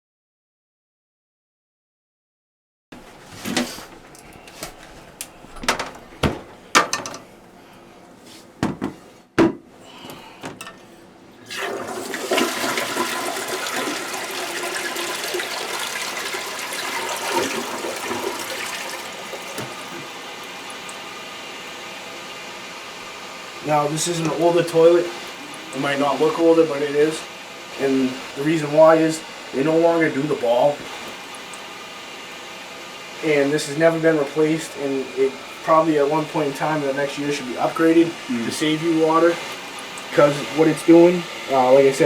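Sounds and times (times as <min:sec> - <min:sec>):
water rushing into tank: 0:11.4 - 0:21.1
toilet flushing: 0:11.4 - 0:42.0.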